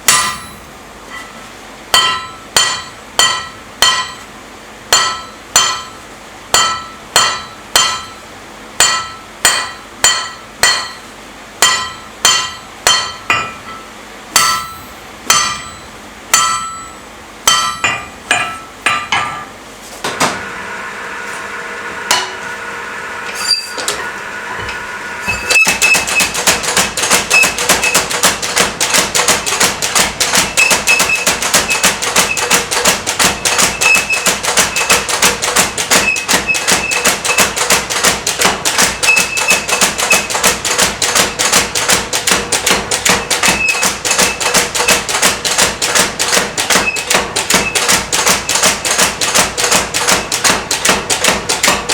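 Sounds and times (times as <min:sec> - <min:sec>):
hammer ringing on anvil: 0:00.0 - 0:04.2, 0:04.9 - 0:08.2, 0:08.8 - 0:19.5
machine hum: 0:00.0 - 0:18.9, 0:19.5 - 0:51.9
power hammer rapid blows: 0:14.3 - 0:15.9, 0:25.2 - 0:51.9.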